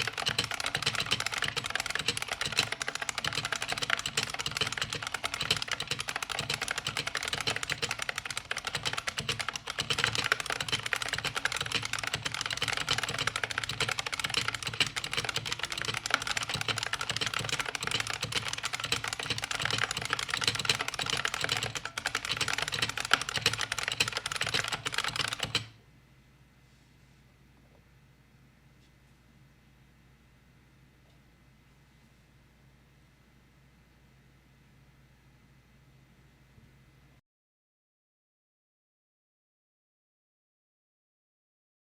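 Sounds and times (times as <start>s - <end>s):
clicky keyboard typing: 0.0s - 25.8s.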